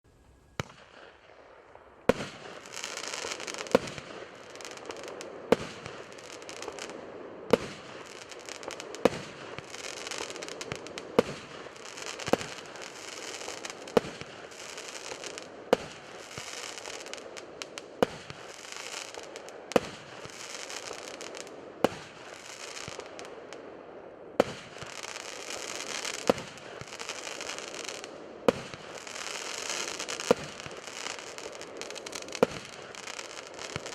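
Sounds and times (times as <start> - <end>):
firework crackling glitter: 1.8 - 23.6, 24.4 - 33.9
firework shots banging: 24.4 - 33.9.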